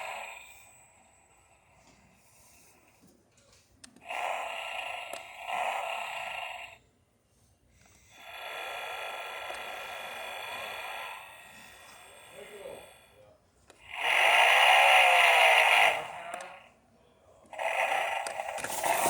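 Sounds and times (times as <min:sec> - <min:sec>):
raspy toy sound effect: 0:17.6 - 0:19.0.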